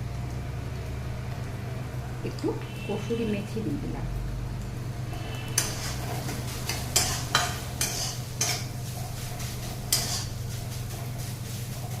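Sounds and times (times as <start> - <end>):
light frying sizzle: 0.0 - 12.0
spatula scraping a pan: 5.2 - 12.0.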